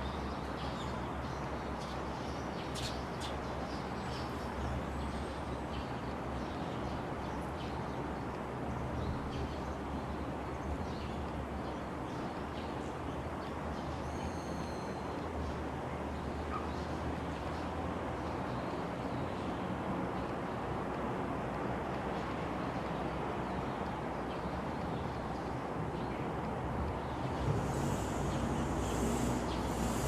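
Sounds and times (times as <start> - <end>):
low rumble and hiss: 26.6 - 30.0
high multi-tone bird call: 27.2 - 30.0.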